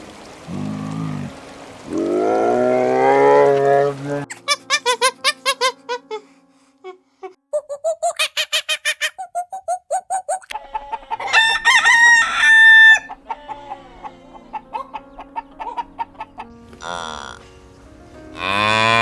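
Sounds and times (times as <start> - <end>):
chickens clucking: 7.6 - 16.6
rooster crowing: 10.6 - 14.0.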